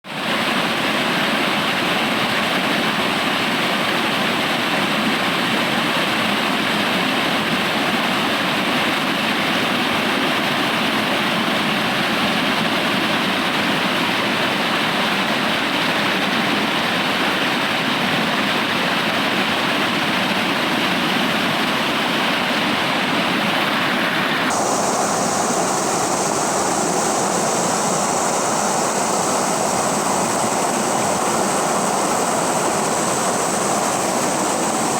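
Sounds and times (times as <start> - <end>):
river water rushing: 23.1 - 34.9.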